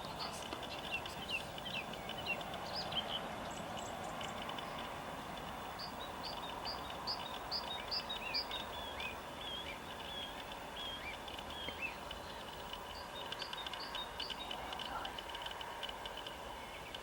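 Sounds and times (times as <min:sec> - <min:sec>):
small birds calling: 0:00.0 - 0:17.0
steady background hiss: 0:00.0 - 0:17.0.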